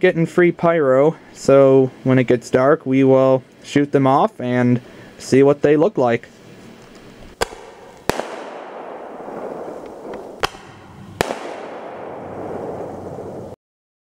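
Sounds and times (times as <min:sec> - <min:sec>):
firework hissing crackle: 0:04.5 - 0:13.6
firework bangs: 0:07.3 - 0:13.6.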